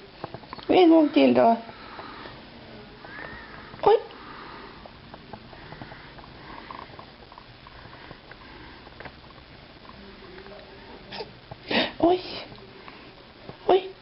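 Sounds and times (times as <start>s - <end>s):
low room hum: 0.0s - 14.0s
small clicks and rustles: 4.7s - 10.7s.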